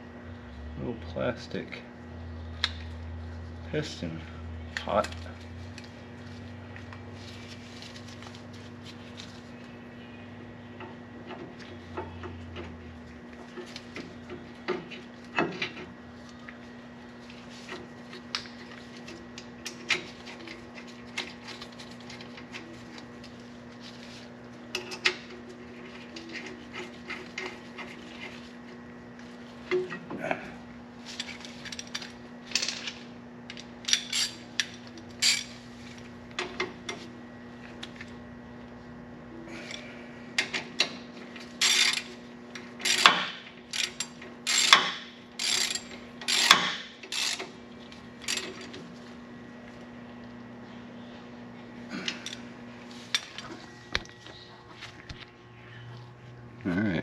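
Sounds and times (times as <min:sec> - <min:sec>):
steady low hum: 0:00.0 - 0:57.0
metal tools clinking and scraping: 0:33.6 - 0:35.6.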